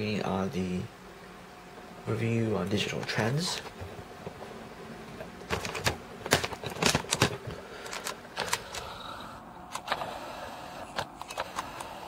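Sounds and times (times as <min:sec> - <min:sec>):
handling clicks and taps: 0:05.2 - 0:08.9.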